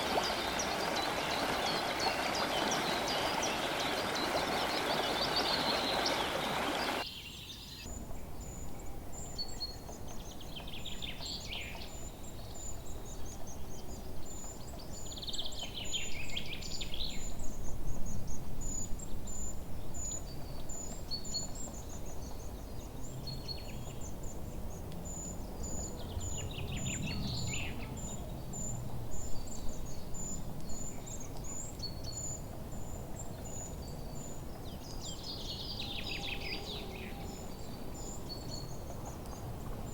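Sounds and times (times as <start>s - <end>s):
descending trilled birdsong: 0.0s - 7.9s, 30.8s - 39.9s.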